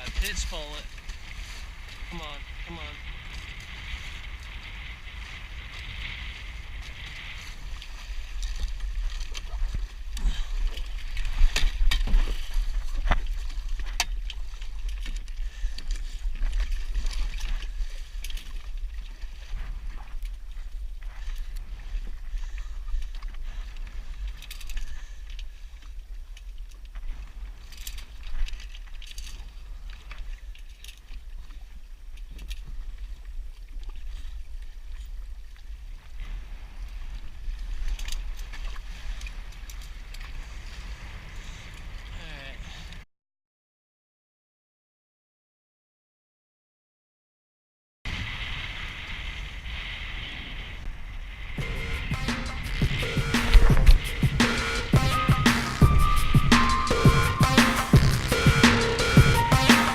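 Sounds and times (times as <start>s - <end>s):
wind buffeting the microphone: 0.0s - 43.0s, 48.1s - 52.2s.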